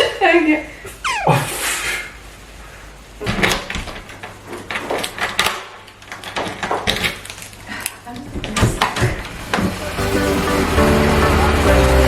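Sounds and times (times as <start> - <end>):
objects clicking and knocking: 3.5 - 9.4.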